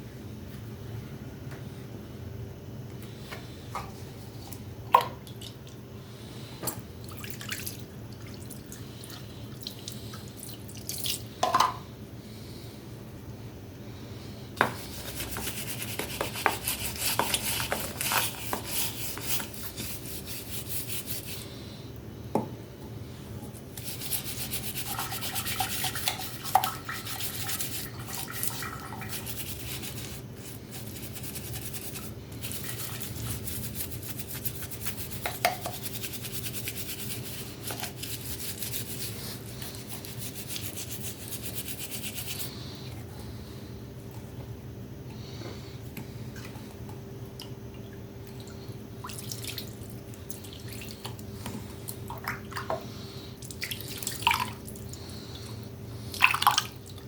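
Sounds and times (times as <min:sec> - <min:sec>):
faint hum: 0:00.0 - 0:57.0
abrasive rubbing on hard surface: 0:14.6 - 0:21.4, 0:23.8 - 0:42.5.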